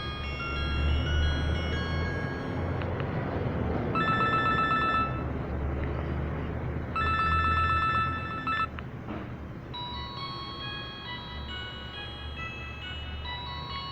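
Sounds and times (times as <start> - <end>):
electronic telephone bell ringtone: 0.0 - 2.8, 3.9 - 5.3, 7.0 - 8.7, 9.7 - 13.9
melodic ringtone: 0.0 - 5.5, 6.9 - 8.7, 9.7 - 13.9.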